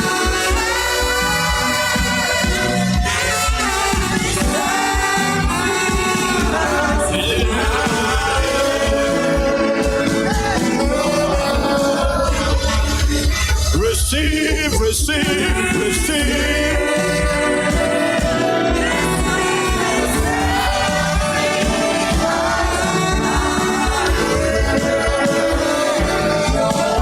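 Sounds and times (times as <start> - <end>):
worship singing: 0.0 - 27.0
deep bass: 1.0 - 27.0.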